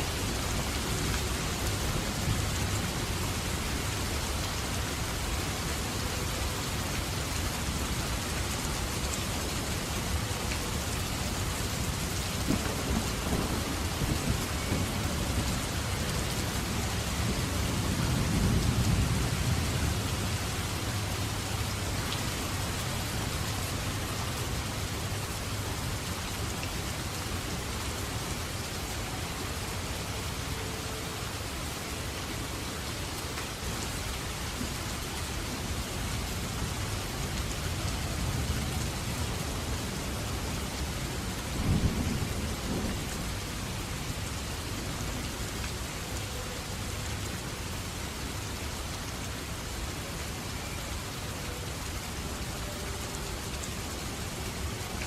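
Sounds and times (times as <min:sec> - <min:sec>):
heavy rain: 0:00.0 - 0:55.0
low roll of thunder: 0:12.4 - 0:15.8.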